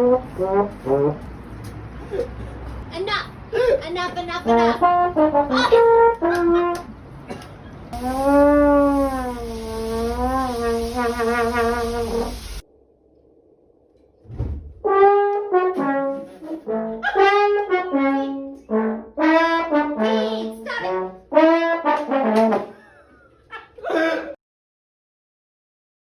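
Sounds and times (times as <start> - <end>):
brass tune: 0.0 - 2.0, 4.3 - 7.0, 7.9 - 12.6, 14.8 - 22.8.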